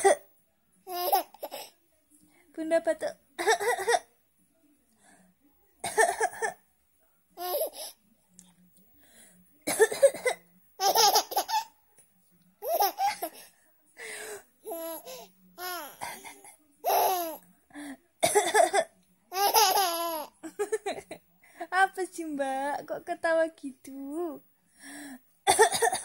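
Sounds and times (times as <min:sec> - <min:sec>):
baby laughing: 0:00.9 - 0:01.7, 0:07.4 - 0:07.9, 0:10.8 - 0:11.7, 0:12.6 - 0:13.4, 0:16.8 - 0:17.4, 0:19.3 - 0:20.3
adult coughing: 0:05.8 - 0:06.6, 0:09.7 - 0:10.4, 0:18.2 - 0:18.9, 0:25.5 - 0:26.0.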